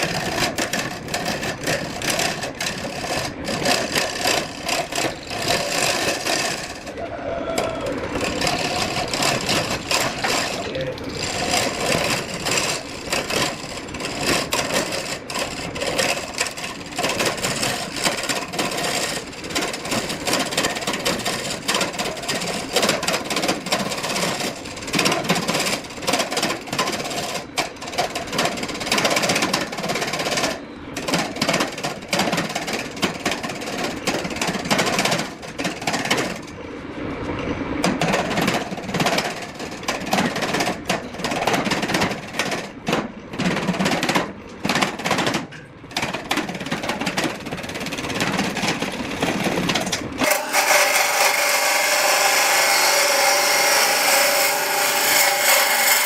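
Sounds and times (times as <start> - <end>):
wood lathe gouge cutting log: 0.0 - 7.0, 8.0 - 27.4, 50.2 - 56.0.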